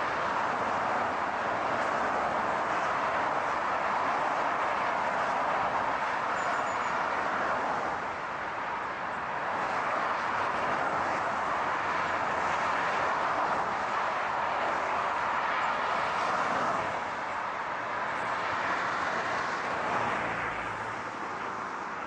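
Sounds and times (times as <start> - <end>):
car driving rushing noise: 7.0 - 22.0.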